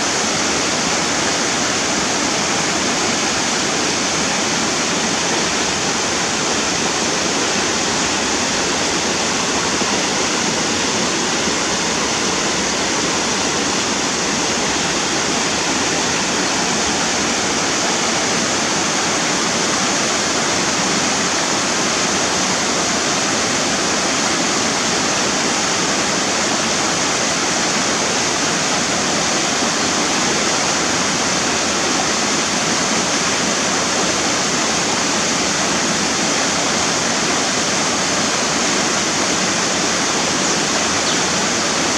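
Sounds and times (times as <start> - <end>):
river rushing over rocks: 0.0 - 41.9.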